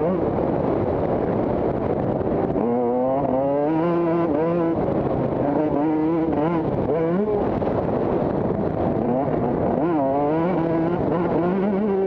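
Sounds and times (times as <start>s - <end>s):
motocross bike engine accelerating: 0.0s - 12.0s.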